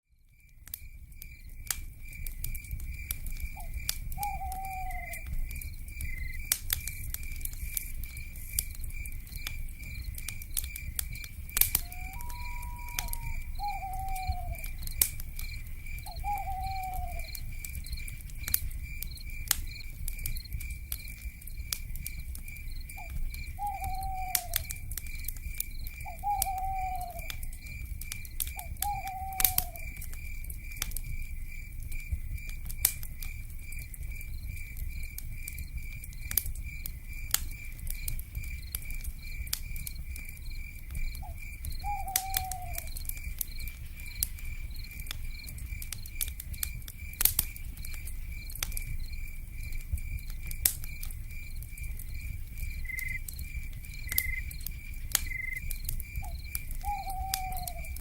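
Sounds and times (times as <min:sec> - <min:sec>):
campfire crackling and popping: 0:00.1 - 0:58.0
cicadas trilling: 0:00.4 - 0:58.0
owl hooting: 0:03.6 - 0:05.2, 0:11.8 - 0:14.7, 0:16.1 - 0:17.4, 0:23.6 - 0:24.6, 0:26.1 - 0:27.3, 0:28.6 - 0:29.9, 0:41.2 - 0:42.9, 0:56.8 - 0:58.0.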